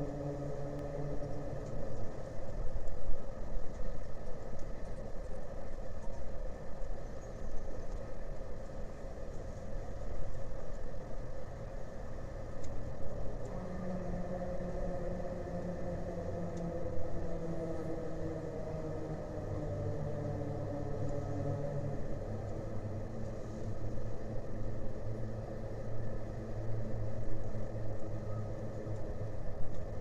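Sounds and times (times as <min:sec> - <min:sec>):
engine idling hum: 0:12.5 - 0:30.0.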